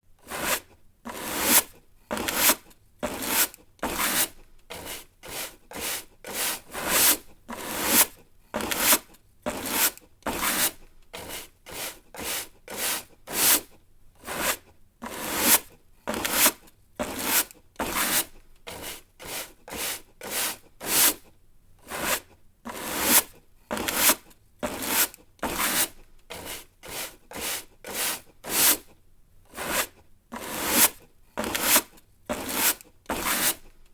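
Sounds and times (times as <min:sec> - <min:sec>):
straw broom sweeping: 0:04.0 - 0:07.2, 0:25.6 - 0:28.8.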